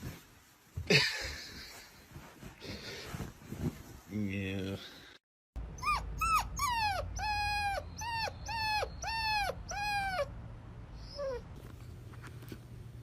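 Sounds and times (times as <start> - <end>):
dog whining: 5.7 - 10.4, 11.0 - 11.5.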